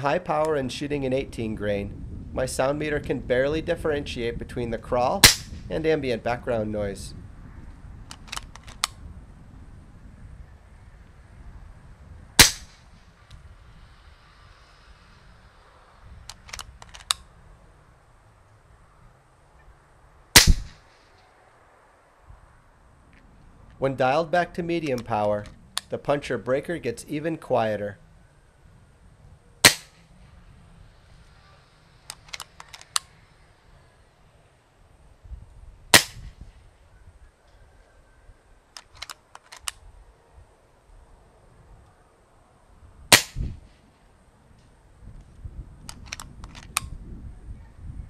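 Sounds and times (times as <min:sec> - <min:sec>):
air rifle shot: 0:05.2 - 0:05.7, 0:12.4 - 0:12.9, 0:20.3 - 0:21.0, 0:29.6 - 0:30.0, 0:35.9 - 0:36.4, 0:43.1 - 0:43.6
light clicks: 0:32.0 - 0:33.1, 0:44.6 - 0:46.9.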